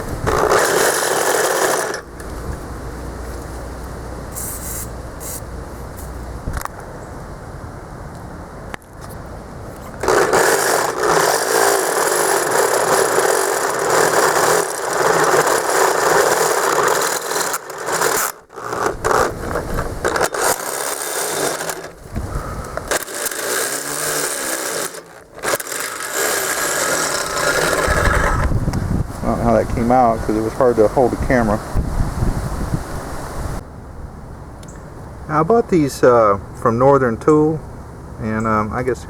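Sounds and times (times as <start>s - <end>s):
power drill grinding metal: 0.0s - 2.2s, 10.0s - 28.6s.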